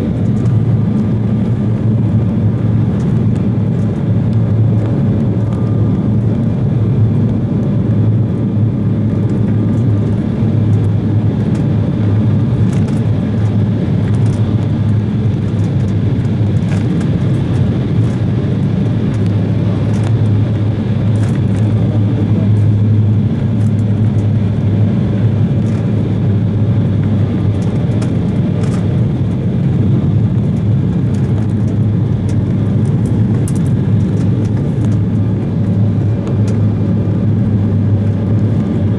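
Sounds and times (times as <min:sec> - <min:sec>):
jet engine cabin drone: 0:00.0 - 0:38.9
faint ticks and rattles: 0:09.2 - 0:37.0.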